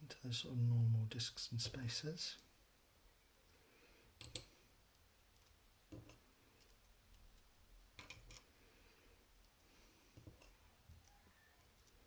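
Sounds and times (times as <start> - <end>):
small metal parts clicking: 5.4 - 8.5.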